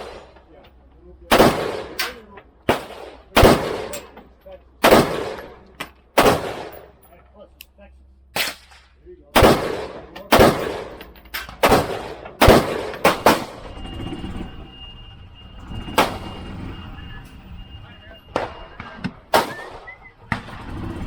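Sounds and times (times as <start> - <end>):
gunshots with echo: 0.0 - 0.4, 1.3 - 4.2, 4.8 - 7.0, 9.4 - 13.7, 18.3 - 21.0.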